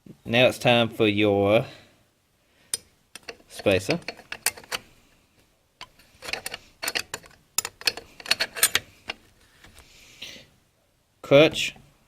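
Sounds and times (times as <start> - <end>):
metal plates clinking: 3.2 - 4.8, 5.8 - 9.2
soft scraping: 8.0 - 10.2.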